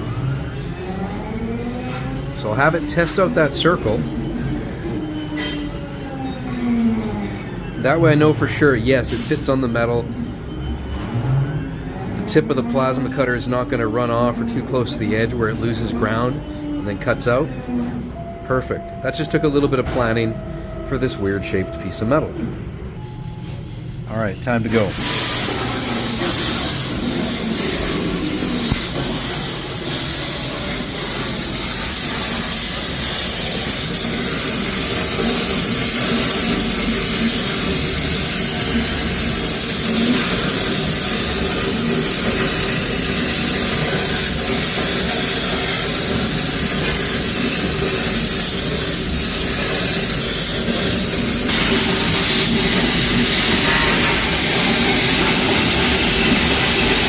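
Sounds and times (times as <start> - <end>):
plasma torch hissing: 24.9 - 57.0.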